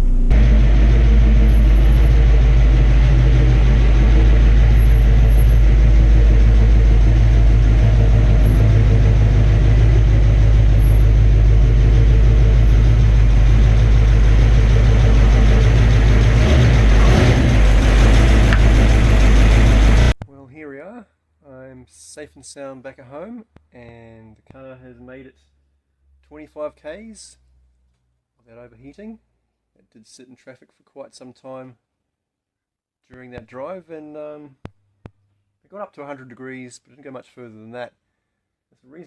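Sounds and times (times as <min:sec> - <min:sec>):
car engine running: 0:00.0 - 0:20.2.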